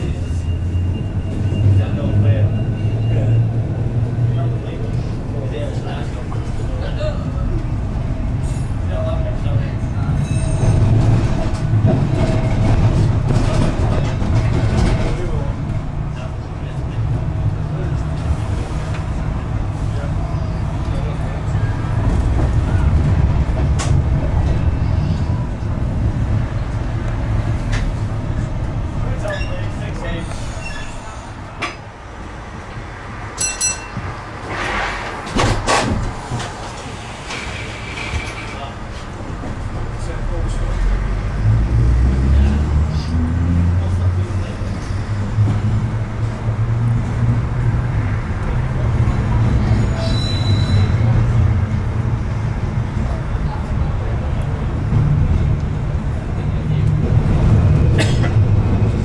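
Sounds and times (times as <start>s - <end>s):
tram rumbling along track: 0.0s - 59.0s
wheels squealing: 9.8s - 13.0s, 29.1s - 31.4s, 49.4s - 51.3s.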